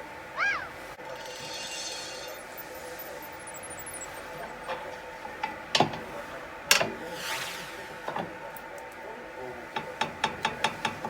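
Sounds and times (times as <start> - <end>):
clicks and knocks of tools: 4.6 - 7.1, 8.0 - 9.1, 9.7 - 11.0
short scraping sweep: 6.0 - 8.5.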